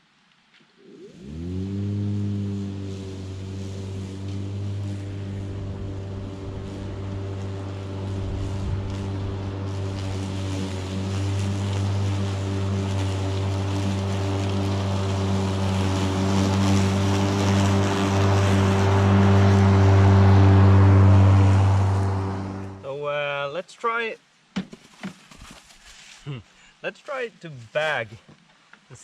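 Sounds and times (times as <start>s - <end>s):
hiss of cut grass: 0.9s - 22.8s, 25.4s - 28.1s
lawnmower running: 1.2s - 22.8s.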